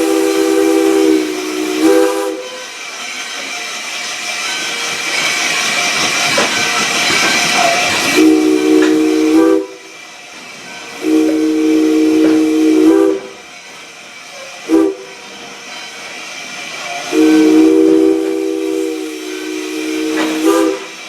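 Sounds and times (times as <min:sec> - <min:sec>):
chime steam whistle blasts: 0:00.0 - 0:03.6, 0:07.5 - 0:10.0, 0:10.7 - 0:16.0, 0:16.9 - 0:21.0
steam hissing: 0:00.0 - 0:21.0.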